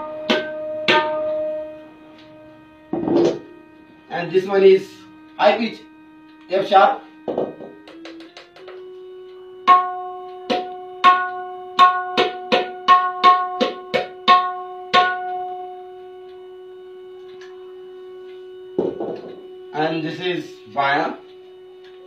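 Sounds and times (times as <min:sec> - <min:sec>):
tabla strokes: 0:00.0 - 0:03.7, 0:07.1 - 0:16.1
steady drone tone: 0:00.0 - 0:22.0.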